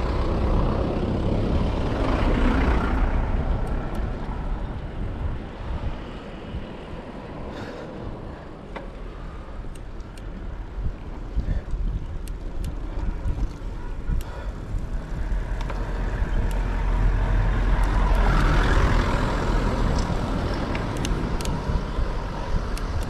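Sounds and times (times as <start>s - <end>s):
vehicle passing by: 0.0s - 4.7s, 14.9s - 22.7s
wind rumble on microphone: 0.0s - 23.0s.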